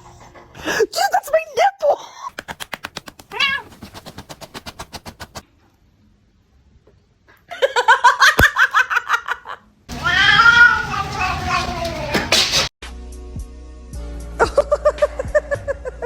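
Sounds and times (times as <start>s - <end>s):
cat meowing: 3.3s - 3.9s, 9.9s - 12.4s.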